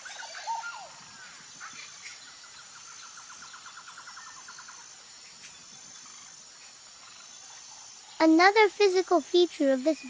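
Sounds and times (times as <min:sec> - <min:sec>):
faint high insect hum: 0:00.0 - 0:10.0
small birds chirping and trilling: 0:00.0 - 0:10.0.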